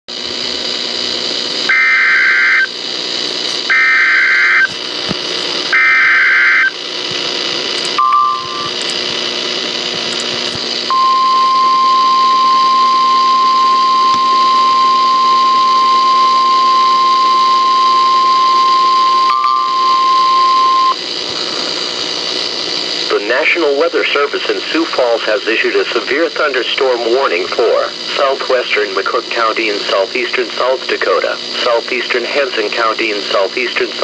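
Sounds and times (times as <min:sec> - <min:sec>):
radio static: 0:00.1 - 0:34.0
screeching data bursts: 0:01.7 - 0:06.8, 0:07.6 - 0:09.4
steady attention tone: 0:01.7 - 0:21.8
short beep: 0:08.0 - 0:08.7.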